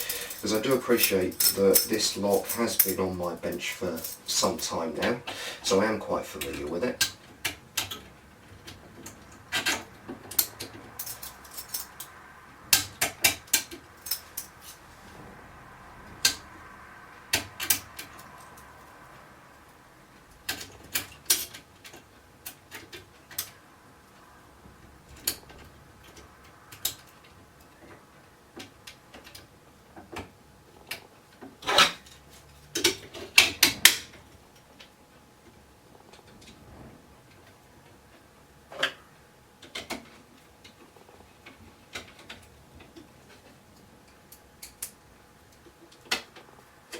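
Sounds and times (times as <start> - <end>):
metal lock parts clinking: 0.0 - 4.8, 9.6 - 12.2, 12.8 - 14.8.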